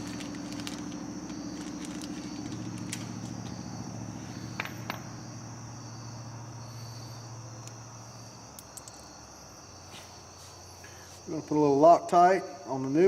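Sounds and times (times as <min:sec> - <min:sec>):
low hum: 0:00.0 - 0:09.2
crickets chirping: 0:00.0 - 0:13.0.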